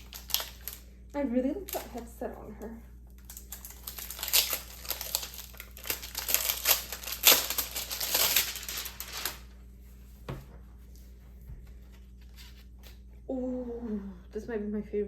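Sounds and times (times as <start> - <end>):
packaging crinkling and rustling: 0.0 - 0.9, 1.6 - 2.2, 3.1 - 9.6.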